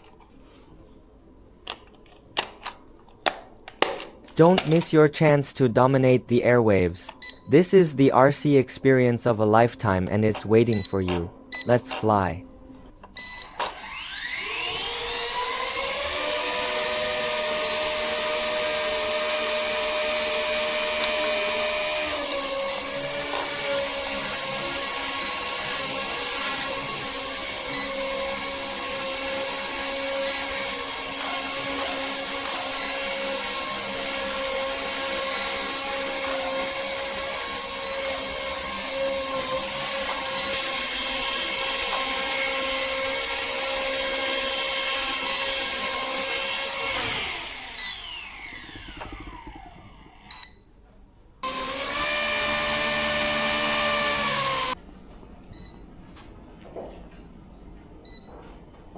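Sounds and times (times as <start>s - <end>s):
helicopter motor high whine: 46.9s - 50.3s.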